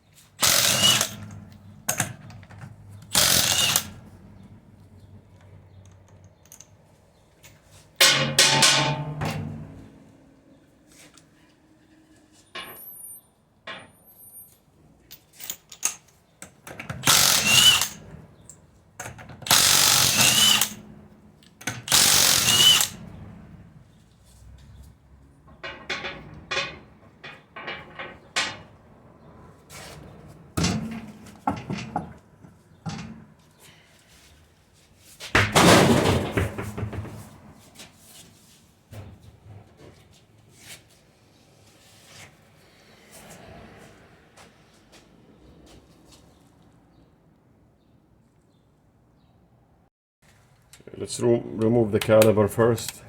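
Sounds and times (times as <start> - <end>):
power tool running: 0.4 - 1.2, 3.1 - 3.9, 17.1 - 18.0, 19.5 - 20.8, 21.9 - 23.0
sharp metallic clicks and knocks: 25.5 - 28.7.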